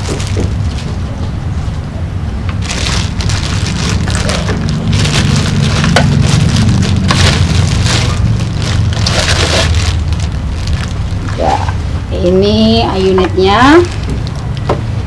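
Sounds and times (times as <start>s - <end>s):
plastic packaging crinkling: 0.0s - 1.1s, 2.6s - 11.5s, 13.8s - 14.6s
low steady hum: 0.0s - 15.0s.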